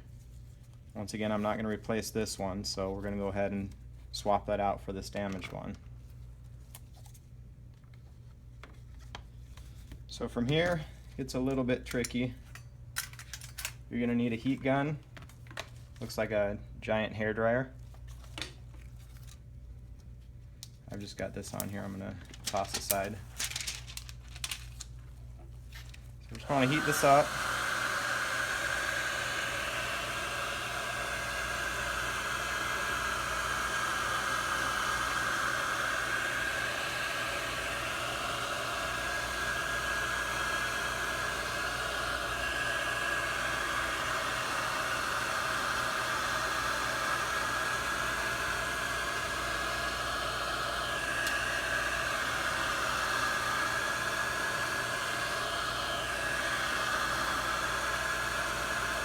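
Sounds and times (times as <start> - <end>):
heat gun blowing with whine: 26.2 - 59.0.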